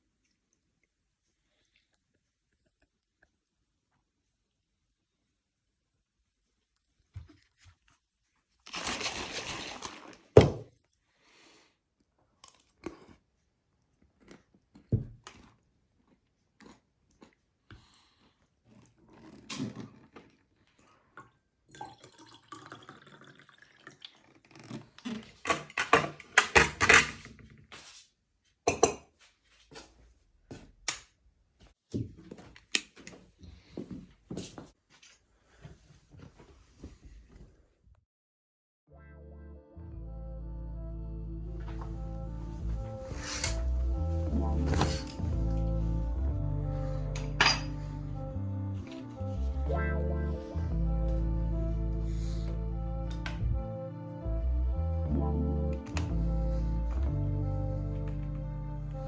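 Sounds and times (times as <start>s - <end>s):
objects clattering: 42.6s - 45.6s, 47.2s - 47.8s.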